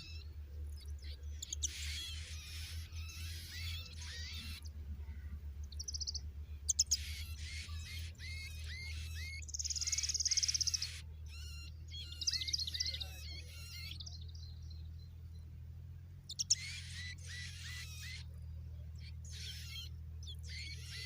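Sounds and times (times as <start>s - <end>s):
baby birds chirping: 0.0s - 15.5s, 16.2s - 21.0s
steady low hum: 0.0s - 21.0s
fast high bird trill: 5.8s - 14.0s, 16.3s - 18.3s, 19.3s - 21.0s.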